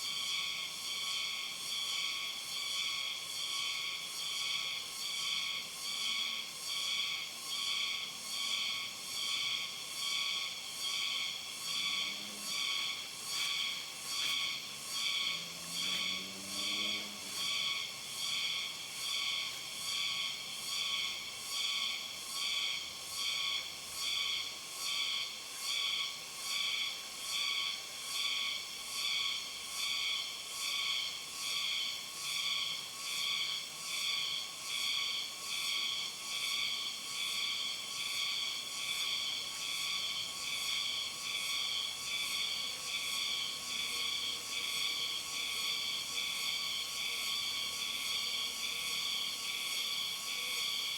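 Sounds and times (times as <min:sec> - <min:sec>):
night insects trilling: 0:00.0 - 0:50.9.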